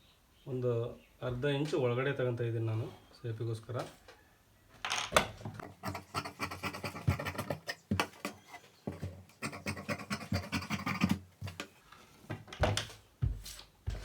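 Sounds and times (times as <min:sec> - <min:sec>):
marking tool scratching on fabric: 0:05.6 - 0:11.6.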